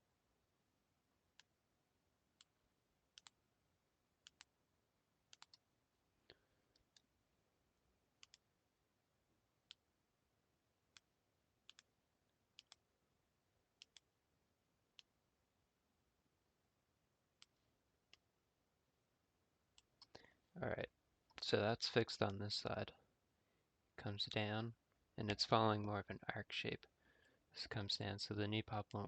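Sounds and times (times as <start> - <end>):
computer mouse clicks: 3.1 - 3.4, 4.2 - 4.5, 5.3 - 5.7, 8.2 - 8.4, 11.7 - 11.9, 12.6 - 12.8, 13.8 - 14.1.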